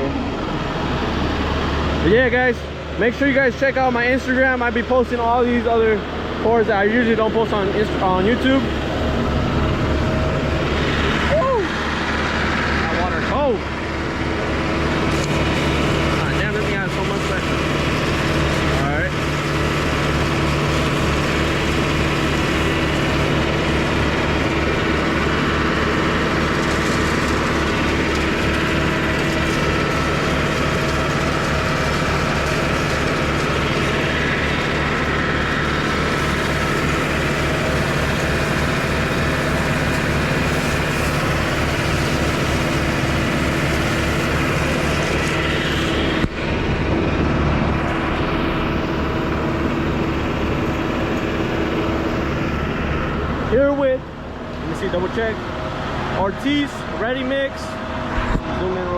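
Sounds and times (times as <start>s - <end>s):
pump engine pulsing: 0.0s - 58.9s
water hose hiss: 14.9s - 46.2s.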